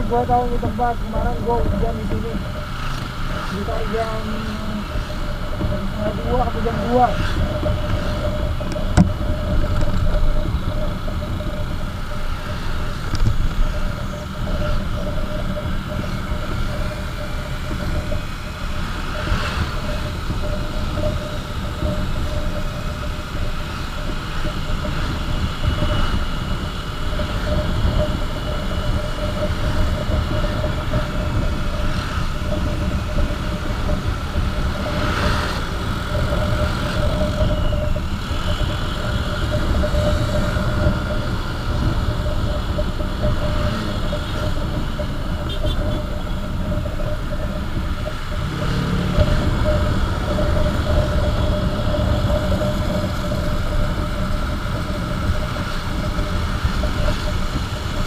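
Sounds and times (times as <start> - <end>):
motorcycle engine drone: 0.0 - 58.0
wind rumble on microphone: 0.0 - 58.0.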